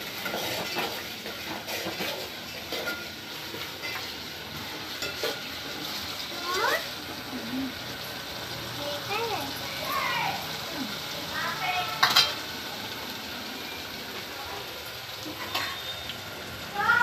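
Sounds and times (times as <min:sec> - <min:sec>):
spoon stirring and scraping pan: 0:00.0 - 0:06.6, 0:12.0 - 0:12.5
food sizzling in oil: 0:00.0 - 0:17.0.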